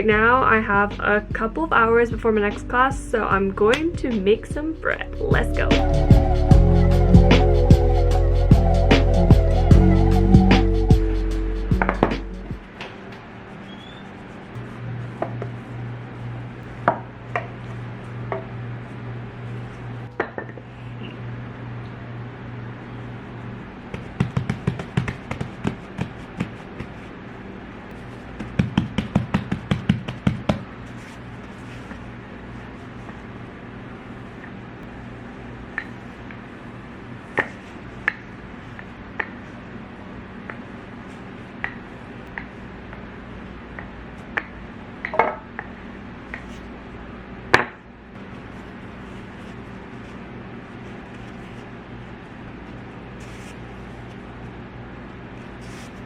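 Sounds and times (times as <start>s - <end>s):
low steady hum: 0.0s - 56.0s.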